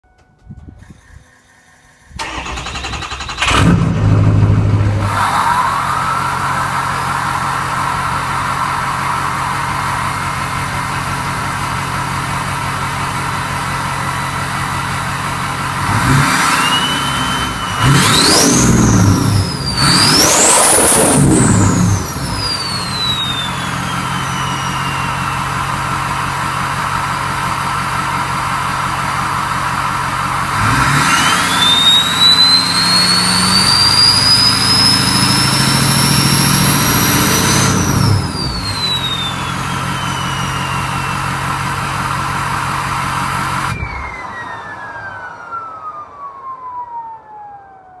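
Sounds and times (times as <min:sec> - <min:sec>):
diesel engine revving: 0:00.8 - 0:44.5
turbo whistle: 0:16.0 - 0:26.1, 0:30.9 - 0:42.0.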